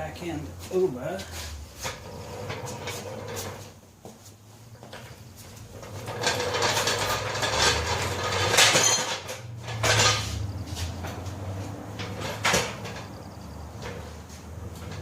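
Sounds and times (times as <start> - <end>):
metal jack clanking and scraping: 4.9 - 13.2, 14.7 - 15.0.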